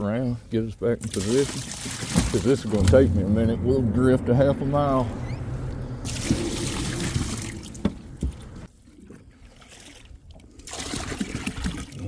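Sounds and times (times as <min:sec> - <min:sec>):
water pouring into bucket: 0:01.0 - 0:03.0, 0:06.0 - 0:07.9, 0:09.4 - 0:12.0.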